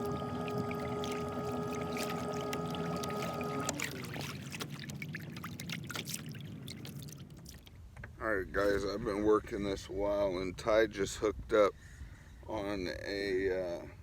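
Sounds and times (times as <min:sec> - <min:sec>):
kayak drive motor whine: 0:00.0 - 0:07.5
water splashing against hull: 0:00.0 - 0:09.1.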